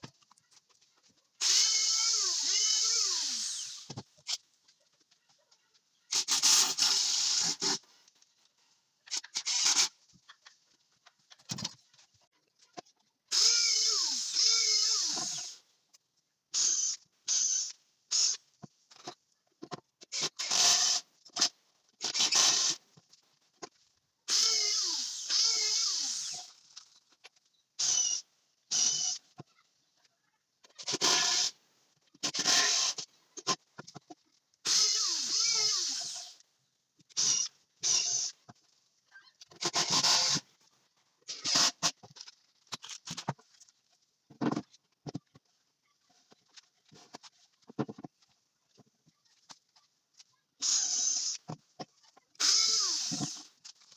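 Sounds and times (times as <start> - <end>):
power drill whirring: 1.4 - 4.4, 6.1 - 7.8, 9.1 - 9.9, 13.3 - 15.6, 16.6 - 18.4, 20.1 - 22.8, 24.3 - 26.5, 27.8 - 29.2, 30.8 - 31.6, 32.2 - 33.1, 34.7 - 36.4, 37.1 - 38.4, 39.6 - 40.5, 41.3 - 42.0, 50.6 - 51.5, 52.4 - 53.5.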